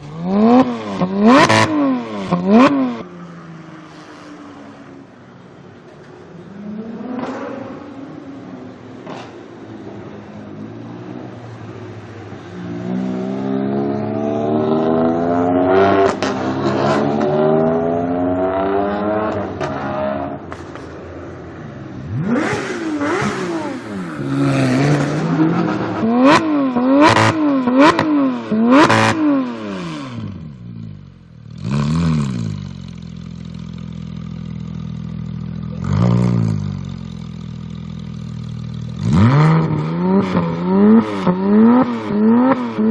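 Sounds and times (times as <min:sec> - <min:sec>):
sports car engine revving: 0:00.0 - 0:03.1, 0:22.0 - 0:42.9
car engine idling: 0:30.5 - 0:39.2.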